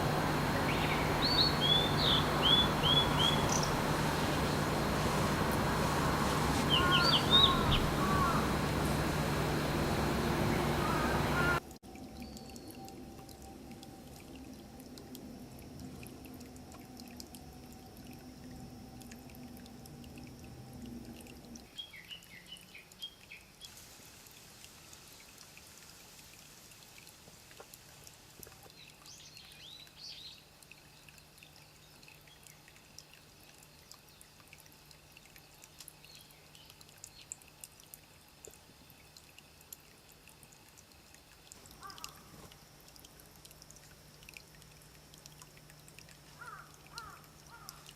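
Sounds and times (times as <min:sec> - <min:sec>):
low hum: 0:00.0 - 0:21.6
small birds chirping: 0:00.4 - 0:11.6
light ticks and drips: 0:11.6 - 0:47.9.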